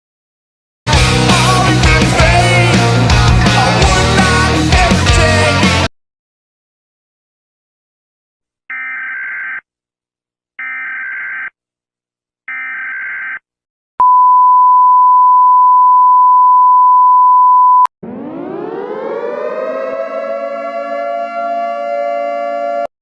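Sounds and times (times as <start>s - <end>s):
siren winding up: 18.0s - 22.9s.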